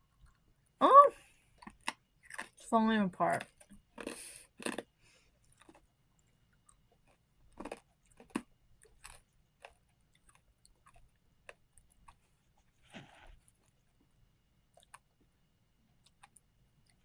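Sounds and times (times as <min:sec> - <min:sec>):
crunching hard candy: 0:03.4 - 0:05.8, 0:06.7 - 0:12.1.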